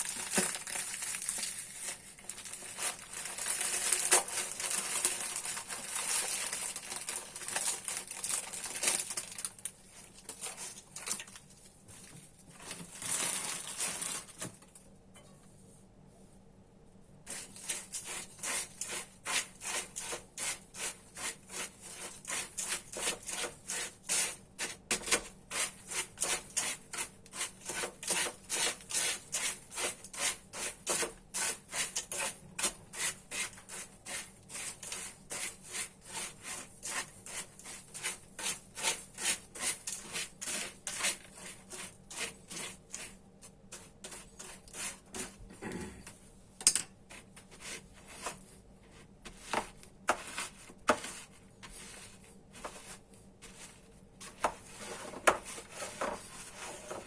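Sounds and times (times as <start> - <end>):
rasping strokes on hand grater: 17.3 - 43.1.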